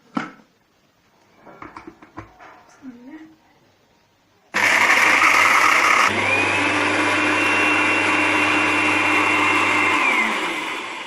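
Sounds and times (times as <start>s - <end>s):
electric grinder motor grinding: 4.6s - 11.0s.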